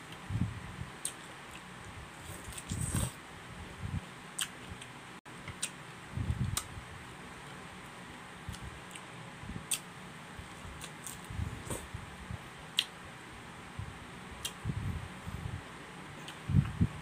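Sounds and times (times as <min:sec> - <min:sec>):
person chewing pineapple: 0:01.0 - 0:03.2, 0:10.6 - 0:11.9.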